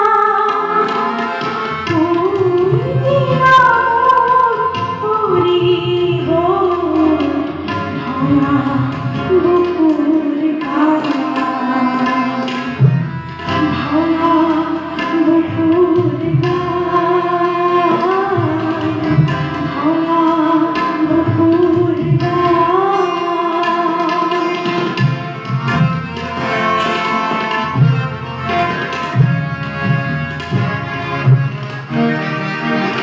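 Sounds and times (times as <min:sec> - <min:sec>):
steady drum beat: 0:26.6 - 0:28.4.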